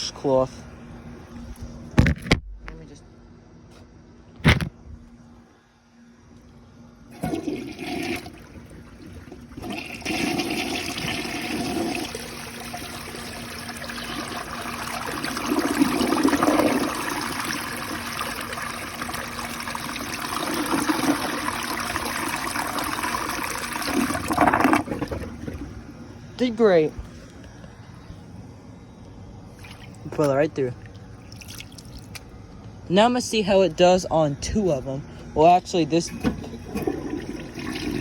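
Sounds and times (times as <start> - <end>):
toilet water rushing: 7.1 - 26.0, 36.1 - 38.0.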